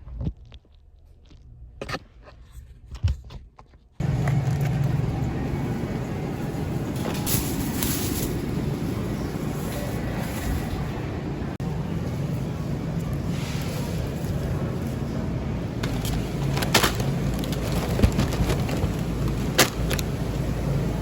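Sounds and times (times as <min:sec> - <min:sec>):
car road and engine rumble: 0:04.0 - 0:07.7, 0:11.1 - 0:21.0
packages being handled: 0:15.8 - 0:20.8.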